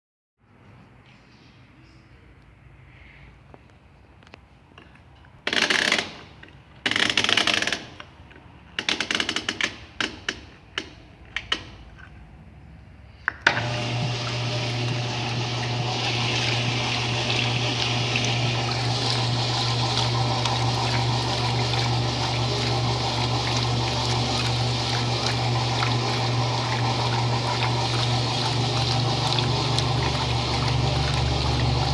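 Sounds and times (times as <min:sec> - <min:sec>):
washing machine hum: 0:13.5 - 0:31.9
water rushing into machine: 0:13.5 - 0:31.9.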